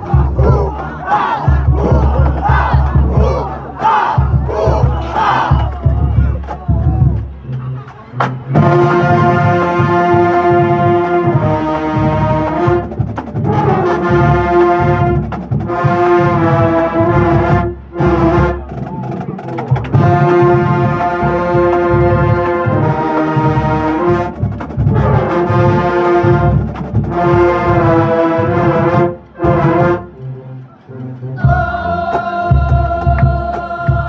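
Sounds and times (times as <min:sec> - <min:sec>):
low drum pattern: 0:00.0 - 0:07.5
marching band brass chords: 0:00.0 - 0:34.0.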